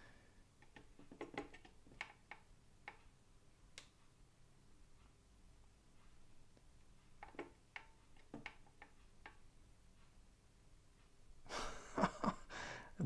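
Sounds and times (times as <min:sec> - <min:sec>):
faint irregular clicks: 0:00.6 - 0:04.2, 0:04.9 - 0:11.2.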